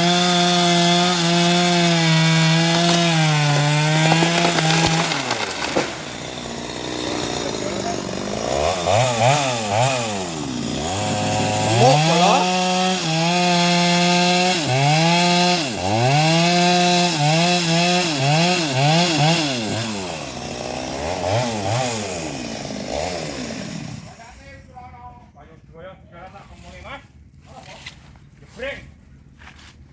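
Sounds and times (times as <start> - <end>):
small engine revving: 0.0 - 20.1.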